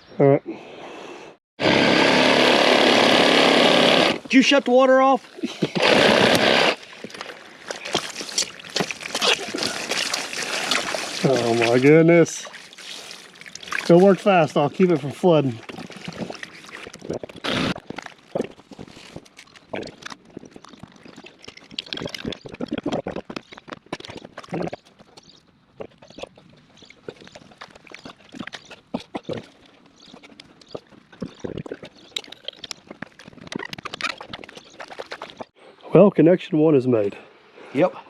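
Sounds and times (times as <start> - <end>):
water splashing: 4.0 - 23.2.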